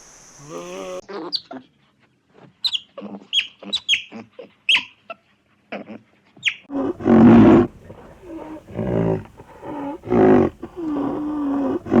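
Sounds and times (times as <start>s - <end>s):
large animal calling: 6.7s - 12.0s.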